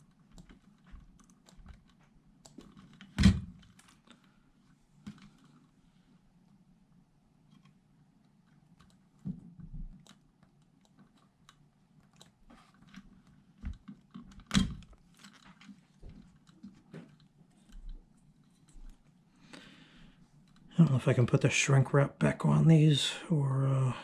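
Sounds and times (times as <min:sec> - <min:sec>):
hands handling wires and tools: 0:07.5 - 0:19.3.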